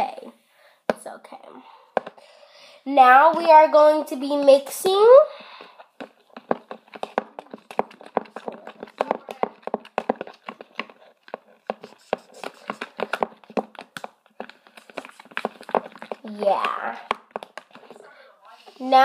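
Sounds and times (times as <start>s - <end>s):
utensil tapping against bowl: 6.0s - 18.0s.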